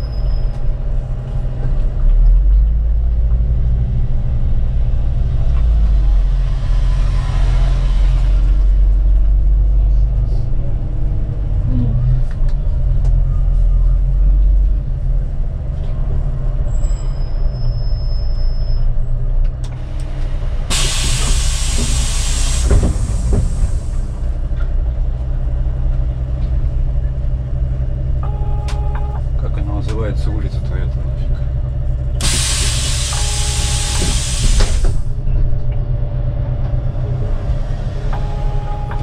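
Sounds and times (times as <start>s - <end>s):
bus engine drone: 0.0s - 39.0s
road rumble: 0.0s - 39.0s
compressed air hiss: 20.7s - 24.1s, 32.2s - 35.0s.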